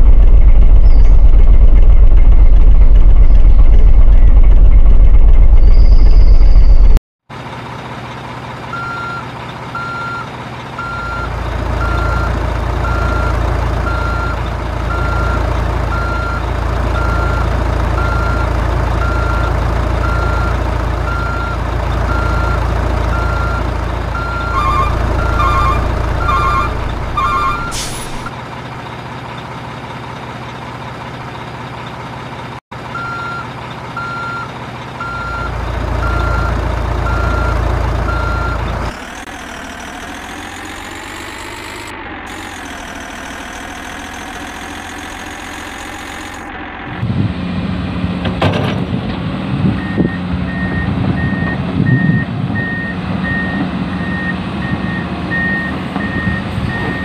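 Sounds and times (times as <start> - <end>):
low engine rumble: 0.0 - 57.0
higher-pitched reversing beep: 5.5 - 7.0, 24.2 - 28.3
toy reversing beeps: 24.2 - 28.3, 33.0 - 36.5
motor whine: 38.9 - 46.7.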